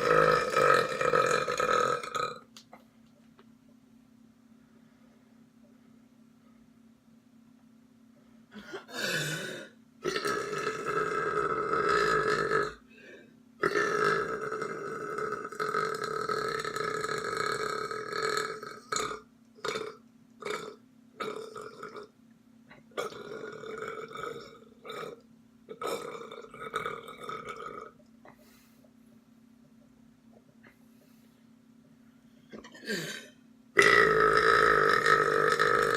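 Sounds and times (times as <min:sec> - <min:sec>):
person belching: 0:00.0 - 0:02.5, 0:08.6 - 0:12.8, 0:13.6 - 0:22.1, 0:22.9 - 0:28.0, 0:32.5 - 0:35.9.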